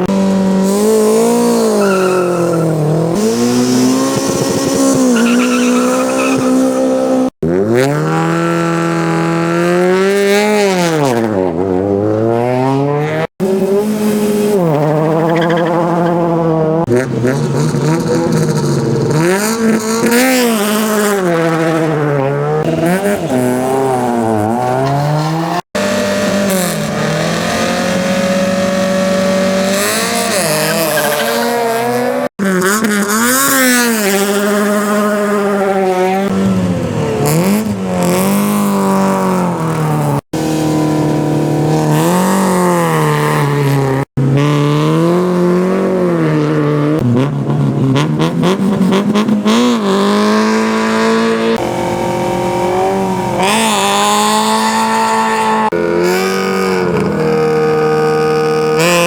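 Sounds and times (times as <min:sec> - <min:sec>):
rally car engines revving: 0:00.0 - 0:59.0
tyre squeal: 0:00.7 - 0:06.9, 0:30.2 - 0:31.8.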